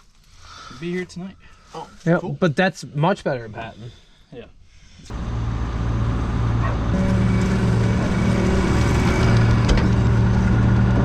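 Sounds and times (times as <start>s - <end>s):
combine harvester engine drone: 5.1s - 11.0s
deeper hum: 5.1s - 11.0s.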